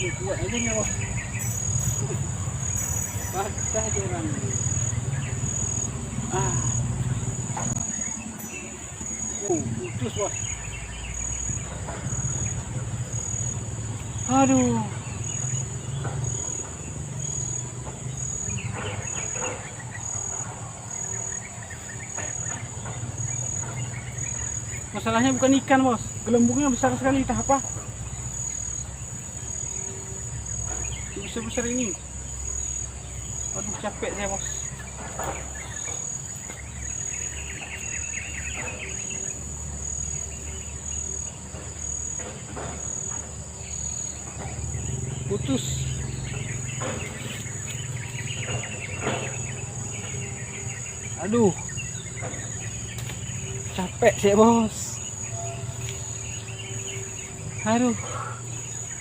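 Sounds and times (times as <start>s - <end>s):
insect calling in high pulses: 0.0s - 42.2s.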